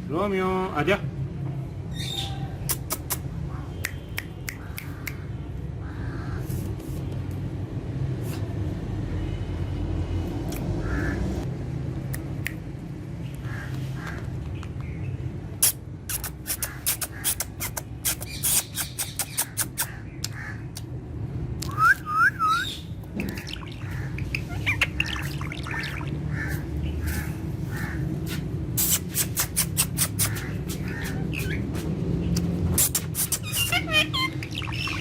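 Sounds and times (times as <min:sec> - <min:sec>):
parakeet calling: 0:21.8 - 0:35.0.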